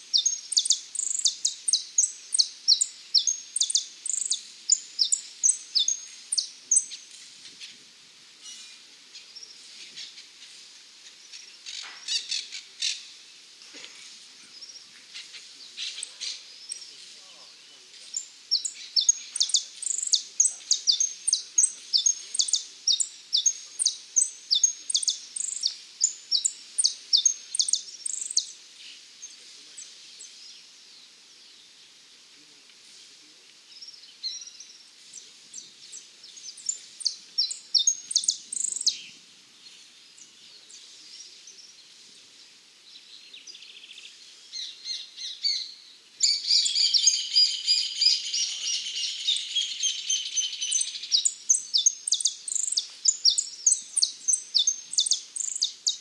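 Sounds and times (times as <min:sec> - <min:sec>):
finch singing high chirps: 0:00.1 - 0:07.0, 0:18.1 - 0:28.5, 0:36.4 - 0:39.1, 0:44.6 - 0:56.0.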